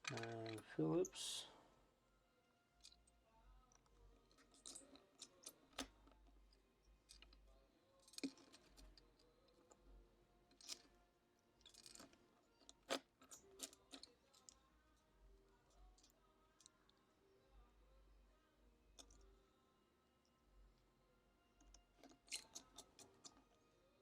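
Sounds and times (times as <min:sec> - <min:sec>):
small tools clicking on metal: 0:11.6 - 0:14.6.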